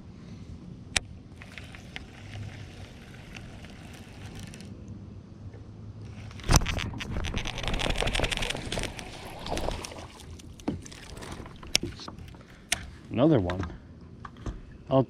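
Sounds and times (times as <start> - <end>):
clicks and knocks from rod and boat: 1.0 - 4.7, 5.5 - 14.7
rapid fishing reel rattling: 1.3 - 4.7, 6.1 - 11.8.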